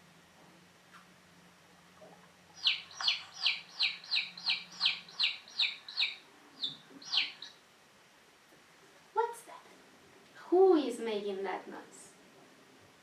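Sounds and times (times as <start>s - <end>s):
chick peeping from sound book: 2.6s - 7.6s.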